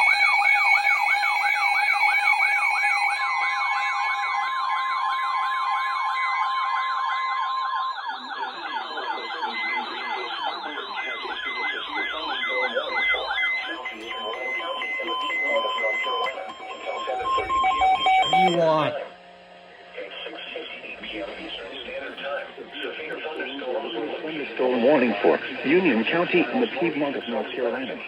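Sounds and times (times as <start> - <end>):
sweeping siren-like tone: 0.0 - 19.0
pulsing high beep: 5.3 - 19.0
steady alert tones: 8.9 - 19.0.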